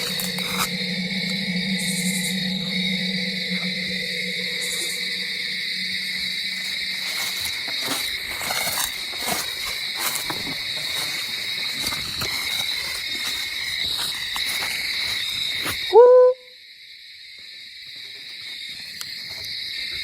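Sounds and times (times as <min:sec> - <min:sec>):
crickets trilling: 0:00.0 - 0:20.0
crackles and rustles: 0:06.6 - 0:15.9.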